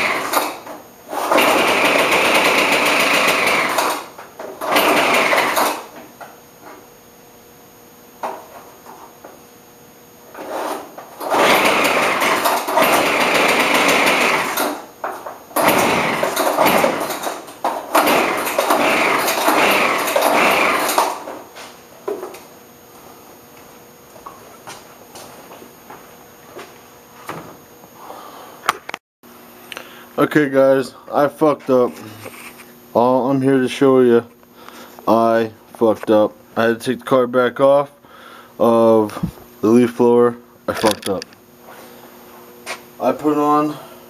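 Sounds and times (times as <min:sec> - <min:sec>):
leaf blower engine sputtering: 0:00.0 - 0:06.0, 0:10.4 - 0:21.4.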